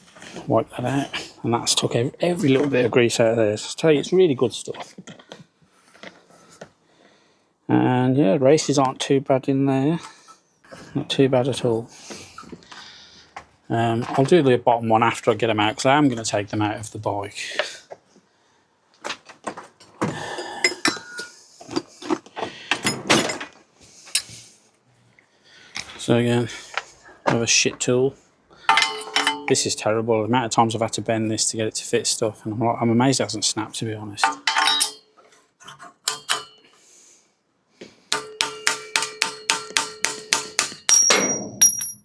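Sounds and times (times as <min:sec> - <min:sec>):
metal tool tapping on metal: 0:28.7 - 0:29.5, 0:36.1 - 0:36.6, 0:38.1 - 0:42.0
metal ringing: 0:28.7 - 0:29.6, 0:34.3 - 0:35.1, 0:38.1 - 0:42.0.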